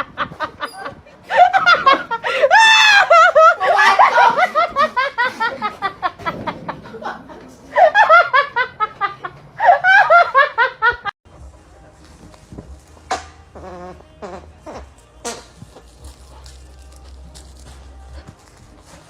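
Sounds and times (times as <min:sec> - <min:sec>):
person laughing hard: 0:00.0 - 0:11.1.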